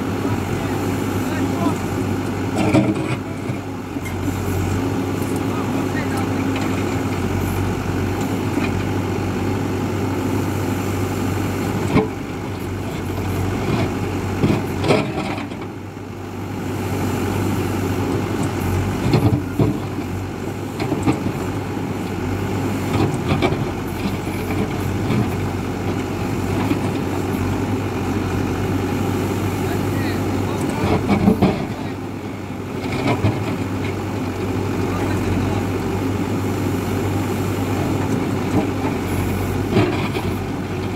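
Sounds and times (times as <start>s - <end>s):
backhoe diesel engine running: 0.0s - 40.9s.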